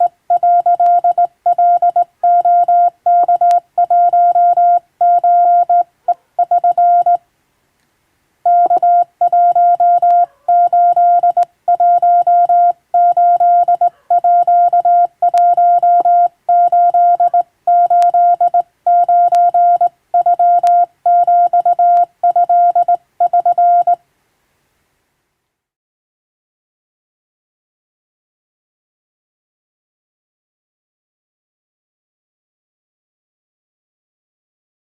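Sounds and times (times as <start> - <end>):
morse code beeps: 0.0 - 7.2, 8.5 - 24.0.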